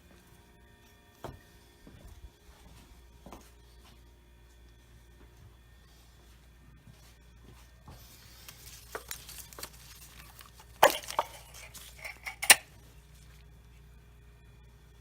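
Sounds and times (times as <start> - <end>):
metal parts clinking: 10.3 - 12.6.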